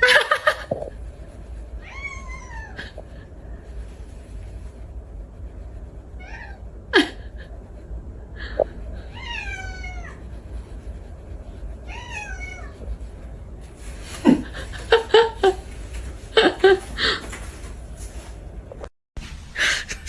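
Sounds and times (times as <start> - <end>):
cat meowing: 1.8 - 2.8, 6.2 - 6.6, 9.0 - 10.2, 11.9 - 12.8.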